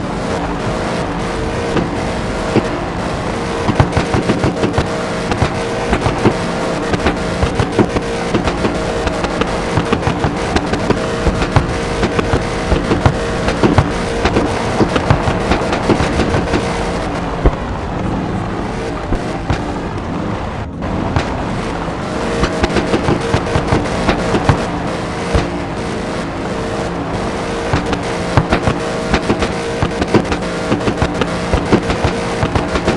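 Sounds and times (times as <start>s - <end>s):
car engine at high revs: 0.0s - 32.9s
exhaust cracks and pops: 3.5s - 17.8s, 22.4s - 25.8s, 27.6s - 32.9s.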